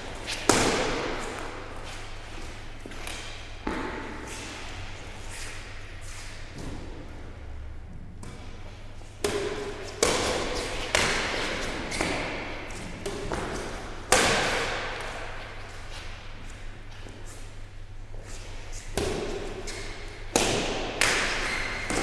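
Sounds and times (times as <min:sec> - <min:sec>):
rackets striking shuttlecock: 0:09.2 - 0:15.4, 0:18.9 - 0:22.0.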